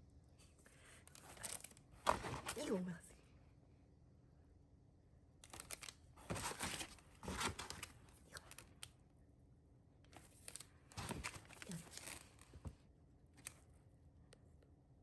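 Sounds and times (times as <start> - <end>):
packaging rustling and crinkling: 5.5 - 8.6.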